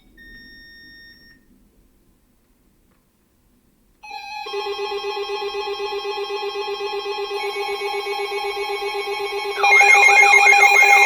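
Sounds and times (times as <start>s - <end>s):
emergency alert tone: 9.6s - 11.0s.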